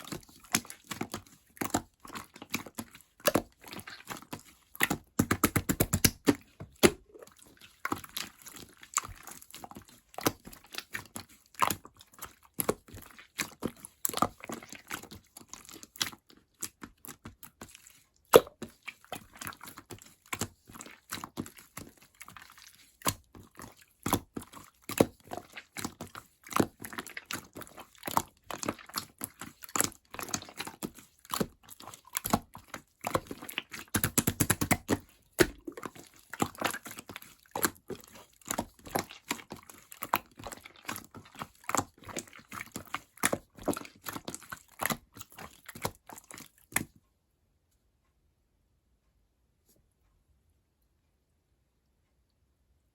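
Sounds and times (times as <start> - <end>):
slime squished by hand: 0.0 - 46.9.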